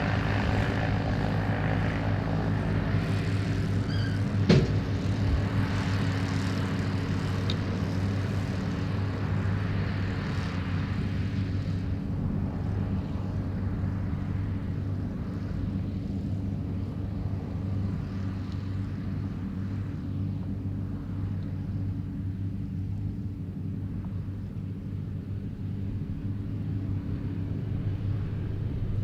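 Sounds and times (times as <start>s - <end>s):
round baler working: 0.0s - 10.5s
tractor engine drone: 0.0s - 29.0s.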